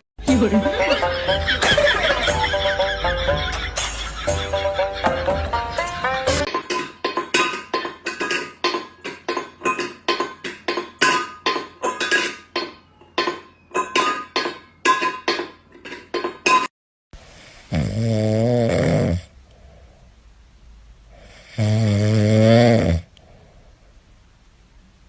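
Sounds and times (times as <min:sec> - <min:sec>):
rapid clinking of ringing object: 0:06.8 - 0:16.7.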